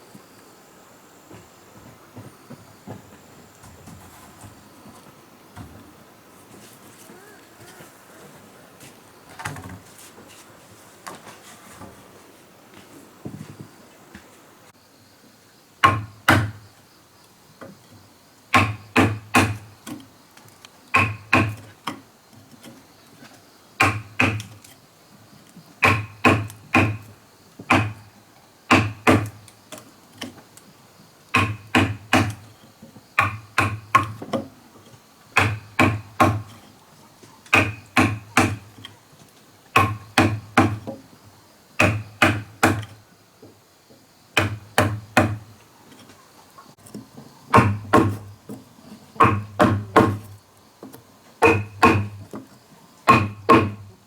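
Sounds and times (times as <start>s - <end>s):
tool striking wood: 15.8s - 16.6s, 18.5s - 19.7s, 20.9s - 21.7s, 23.8s - 24.6s, 25.8s - 27.1s, 27.7s - 28.0s, 28.7s - 29.4s, 31.3s - 32.4s, 33.2s - 34.4s, 35.4s - 36.6s, 37.5s - 38.7s, 39.8s - 41.0s, 41.8s - 43.0s, 44.4s - 45.4s, 47.5s - 48.3s, 49.2s - 50.3s, 51.4s - 52.2s, 53.1s - 53.9s.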